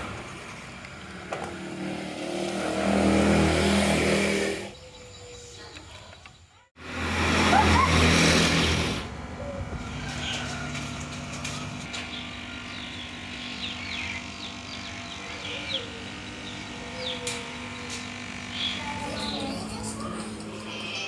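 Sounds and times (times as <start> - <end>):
small engine running: 0.0 - 4.8, 6.8 - 21.0
birds chirping: 4.6 - 6.7, 9.4 - 21.0.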